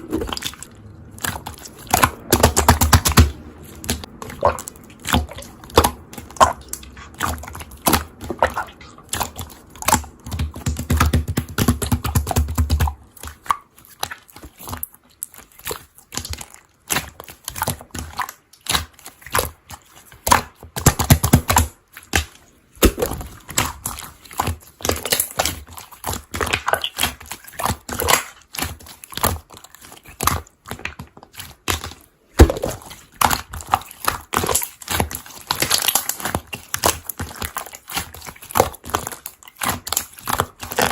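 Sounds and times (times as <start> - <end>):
sticky clicks and pops: 0.0 - 14.9, 20.2 - 23.9
slime worked by hand: 0.0 - 40.9.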